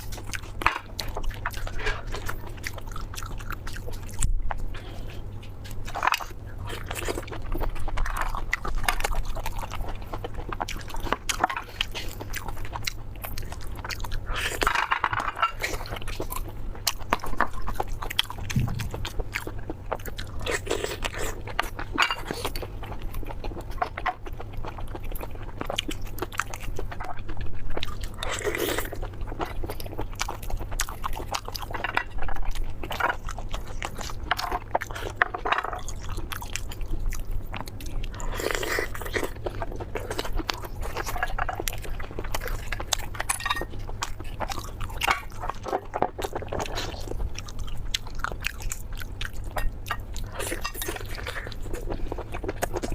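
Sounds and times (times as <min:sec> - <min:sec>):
crunchy bites and chewing: 0:00.0 - 0:52.9
low steady hum: 0:00.0 - 0:52.9.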